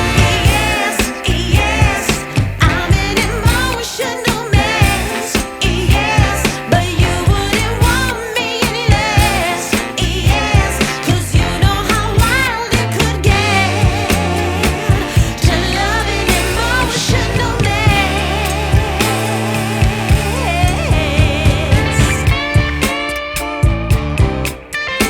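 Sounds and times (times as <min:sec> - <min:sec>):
woman singing pop song: 0:00.0 - 0:22.9
steady drum beat: 0:00.0 - 0:24.8.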